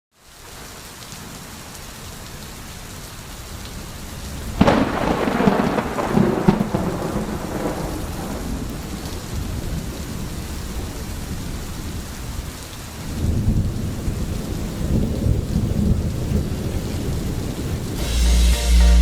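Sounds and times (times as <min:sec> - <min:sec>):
steady rain falling: 0:00.1 - 0:19.0
thunder clap rumbling: 0:04.3 - 0:12.4, 0:13.0 - 0:19.0.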